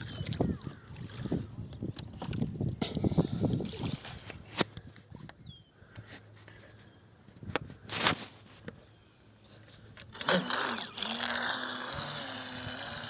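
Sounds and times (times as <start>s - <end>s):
electric motor whine: 10.2s - 13.0s.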